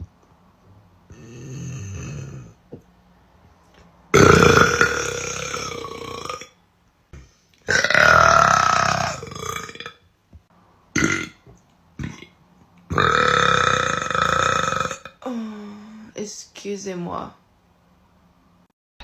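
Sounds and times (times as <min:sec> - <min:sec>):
woman burping: 0:12.0 - 0:12.3.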